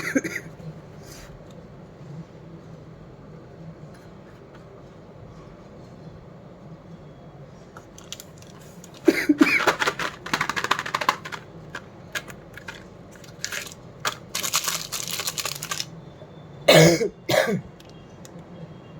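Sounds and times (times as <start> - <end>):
cough-like vocal sound: 0.0 - 0.5, 16.7 - 17.7
plastic packaging crinkling: 7.9 - 16.0.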